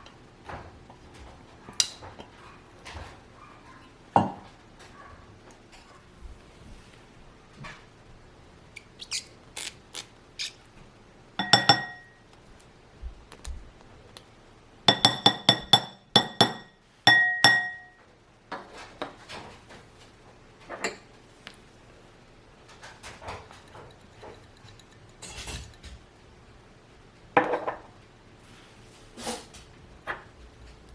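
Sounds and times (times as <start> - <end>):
utensil clinking against bowl: 11.4 - 12.2, 14.9 - 18.0, 23.0 - 26.1.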